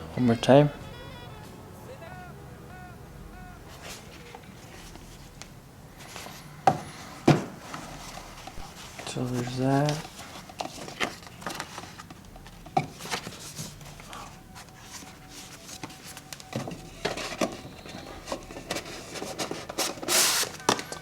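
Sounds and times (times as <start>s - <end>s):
items clicking and knocking on surface: 6.7s - 9.1s, 9.8s - 13.4s, 15.7s - 21.0s.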